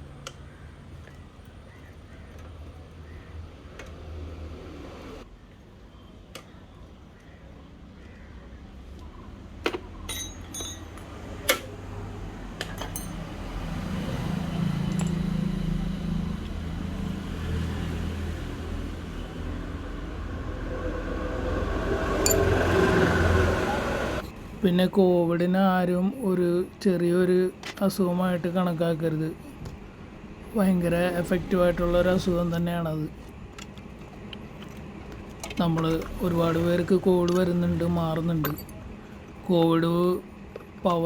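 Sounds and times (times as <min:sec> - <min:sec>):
metal bicycle parts clinking: 0:10.1 - 0:11.0
low steady hum: 0:10.1 - 0:41.0.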